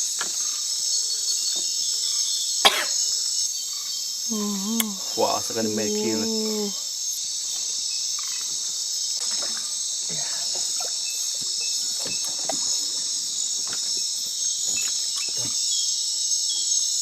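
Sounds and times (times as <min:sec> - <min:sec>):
insects chirping: 0:00.0 - 0:17.0.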